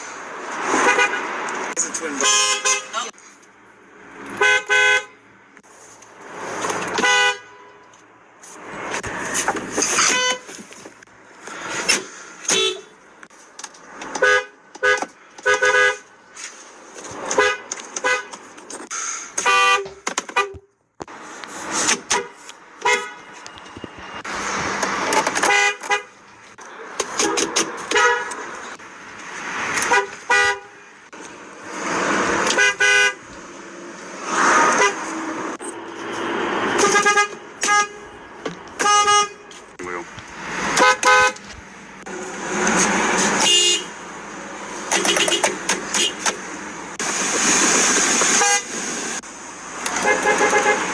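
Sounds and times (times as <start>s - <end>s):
car horns honking: 0.7s - 3.2s, 4.2s - 5.4s, 6.8s - 7.9s, 8.9s - 10.7s, 11.9s - 13.1s, 14.0s - 16.2s, 17.2s - 20.8s, 21.7s - 28.8s, 29.4s - 31.1s, 32.1s - 33.4s, 34.4s - 46.8s, 48.0s - 48.9s, 49.9s - 50.9s
loud rushing noise: 45.6s - 50.9s.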